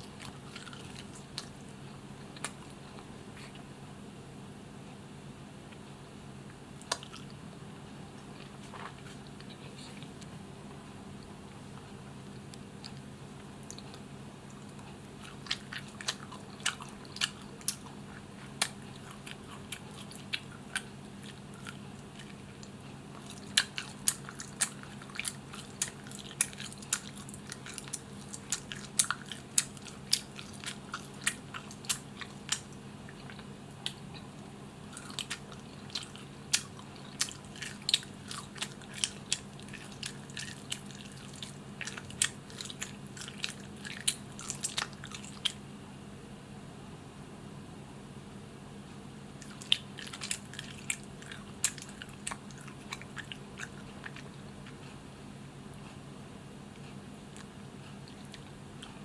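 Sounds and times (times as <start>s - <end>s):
close chewing and biting: 0.0s - 3.7s, 6.8s - 7.4s, 11.2s - 45.6s, 49.4s - 55.0s, 56.8s - 59.0s
steady low hum: 0.0s - 59.0s.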